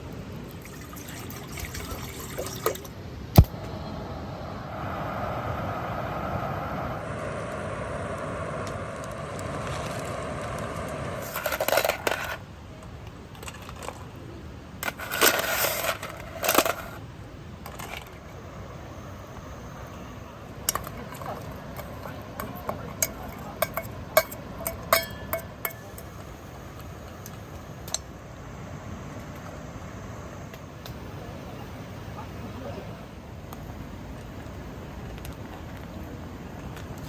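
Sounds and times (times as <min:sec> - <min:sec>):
liquid pouring into container: 0:00.6 - 0:03.5
light dish clinks: 0:23.0 - 0:26.1.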